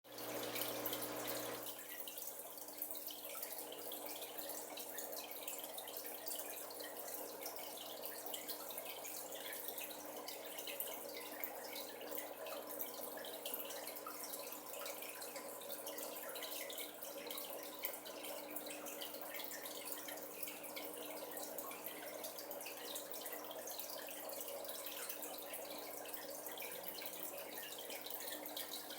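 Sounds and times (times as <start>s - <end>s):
pump hum: 0.1s - 1.8s
water trickling and splashing: 0.1s - 28.9s.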